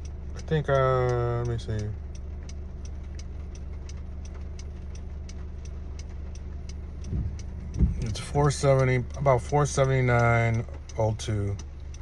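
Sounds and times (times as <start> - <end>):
car engine hum: 0.0 - 12.0
turn signal ticking: 0.0 - 12.0.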